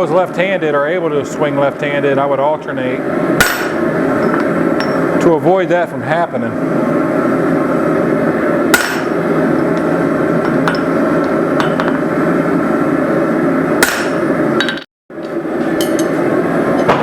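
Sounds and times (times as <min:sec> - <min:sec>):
hammer striking steel on anvil: 0:03.4 - 0:05.2, 0:08.7 - 0:09.1, 0:11.6 - 0:12.0, 0:13.8 - 0:14.8, 0:15.8 - 0:16.2.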